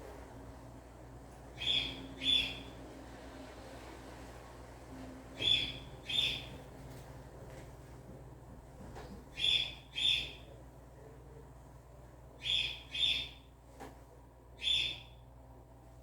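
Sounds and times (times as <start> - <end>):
bird calling: 1.6 - 2.7, 5.4 - 6.5, 9.3 - 10.4, 12.4 - 13.4, 14.6 - 15.1.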